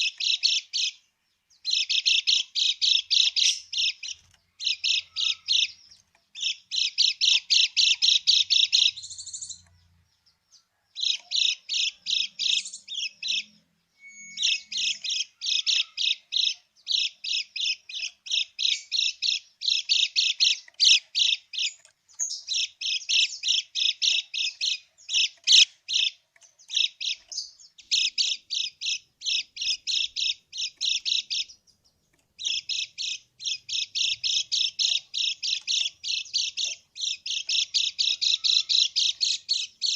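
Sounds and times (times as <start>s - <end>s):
bird's harsh chatter: 1.7s - 9.6s, 11.0s - 31.6s, 32.4s - 39.9s.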